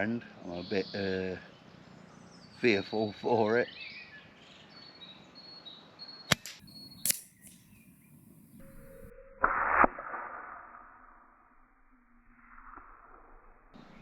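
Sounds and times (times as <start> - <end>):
air rifle clicks: 6.3 - 9.1
air rifle shot: 6.3 - 10.6.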